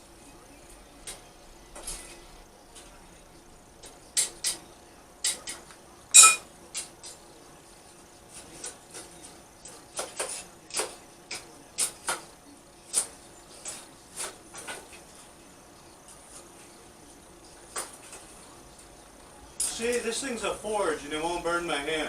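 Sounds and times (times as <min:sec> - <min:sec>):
hammer striking iron on anvil: 0:06.2 - 0:06.4.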